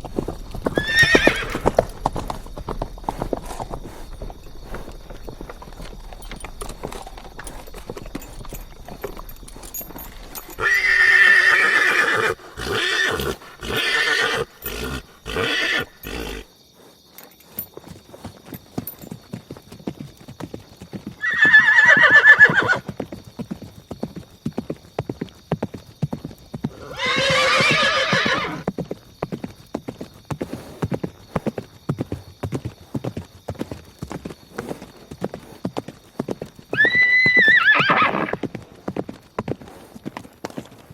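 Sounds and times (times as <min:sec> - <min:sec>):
galloping horse hoofbeats: 0:00.0 - 0:40.9
horse whinnying: 0:00.6 - 0:02.5, 0:06.5 - 0:16.5, 0:21.2 - 0:22.9, 0:26.7 - 0:28.7, 0:36.7 - 0:38.4.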